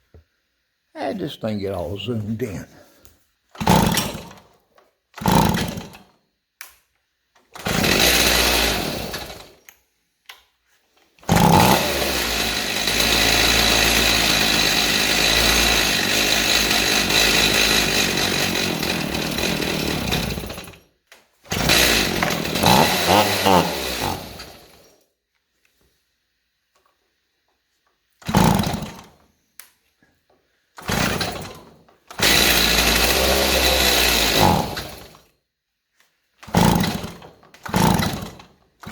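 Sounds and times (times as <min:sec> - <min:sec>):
chainsaw engine running: 0:03.6 - 0:04.4, 0:05.2 - 0:06.1, 0:07.6 - 0:09.6, 0:11.2 - 0:20.8, 0:21.5 - 0:24.8, 0:28.2 - 0:29.2, 0:30.8 - 0:35.2, 0:36.4 - 0:38.9.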